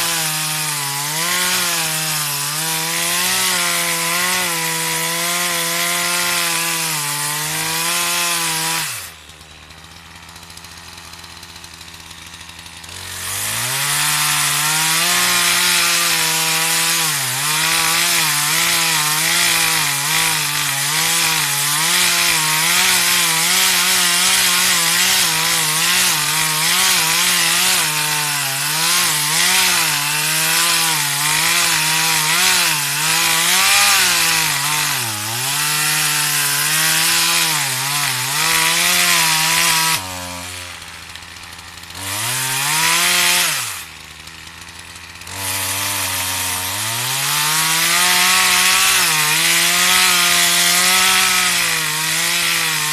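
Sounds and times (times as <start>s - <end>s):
chainsaw cutting wood: 0.0s - 52.9s.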